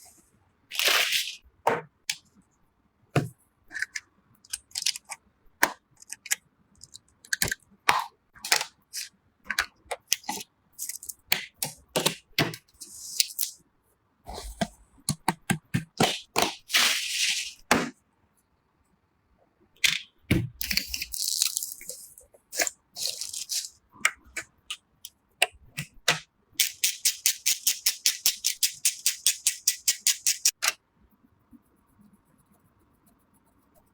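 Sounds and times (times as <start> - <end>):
computer parts clicking and knocking: 3.2 - 12.8.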